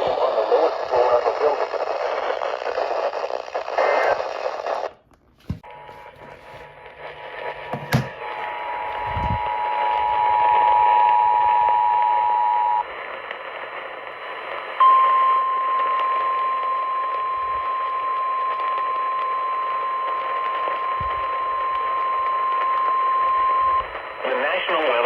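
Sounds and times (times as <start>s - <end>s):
radio hiss: 0.0s - 11.0s, 12.8s - 14.8s, 23.8s - 25.0s.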